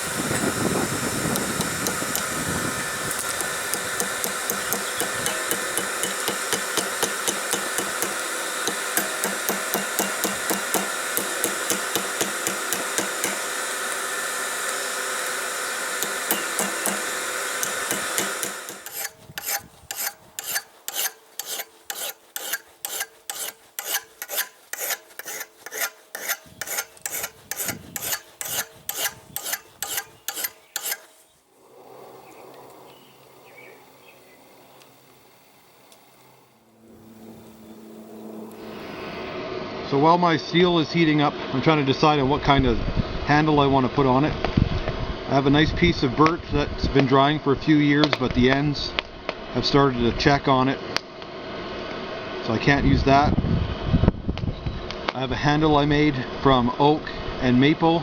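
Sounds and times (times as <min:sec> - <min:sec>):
hammer on hot steel over anvil: 0:01.2 - 0:31.1.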